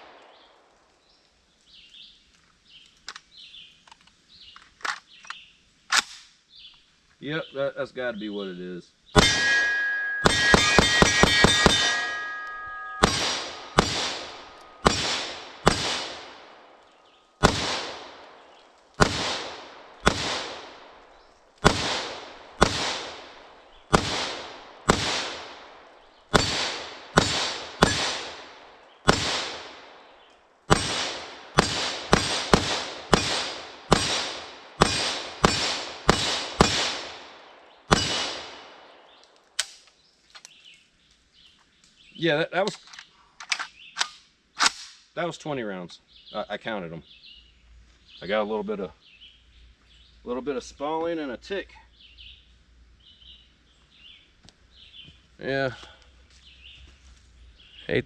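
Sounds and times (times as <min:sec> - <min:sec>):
rifle shots with echo: 0:09.2 - 0:16.8, 0:17.4 - 0:39.2.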